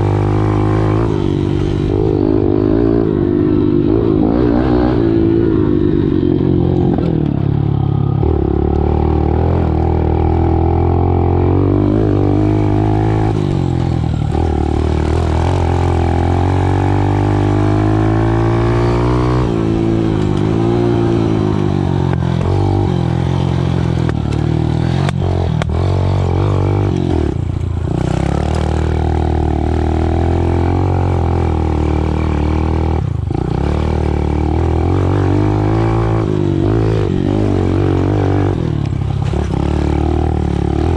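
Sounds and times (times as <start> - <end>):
dirt bike engine revving: 0.0 - 40.9.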